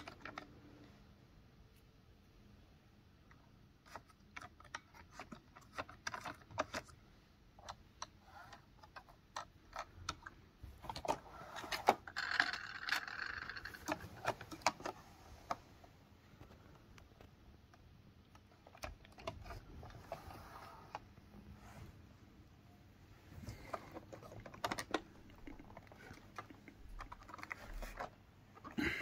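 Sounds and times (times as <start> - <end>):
hard plastic parts clicking: 0.0 - 0.8, 3.9 - 7.0, 7.6 - 15.7, 16.4 - 21.1, 23.4 - 29.0
rustling: 23.1 - 29.0.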